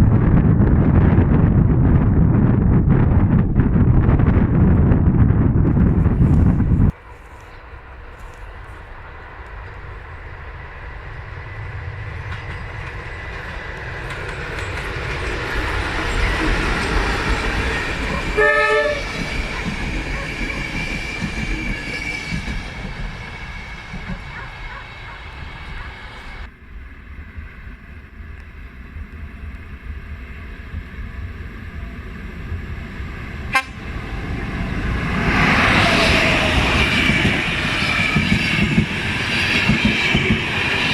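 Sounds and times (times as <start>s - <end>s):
train rumbling past: 0.0s - 40.9s
train horn blast: 17.7s - 20.7s, 33.5s - 34.0s.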